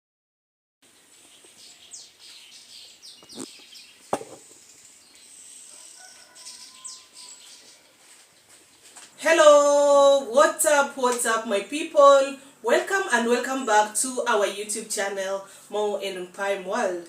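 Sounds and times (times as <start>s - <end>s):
birds chirping: 0.8s - 9.2s
sharp clicks or knocks: 4.1s - 4.6s.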